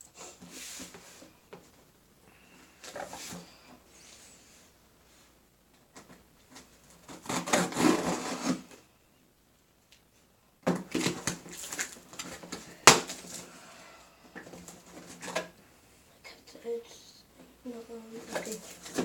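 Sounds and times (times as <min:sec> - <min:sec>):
packaging rustling and scraping: 0:06.0 - 0:08.8, 0:10.8 - 0:13.5, 0:14.4 - 0:15.5, 0:18.2 - 0:19.0.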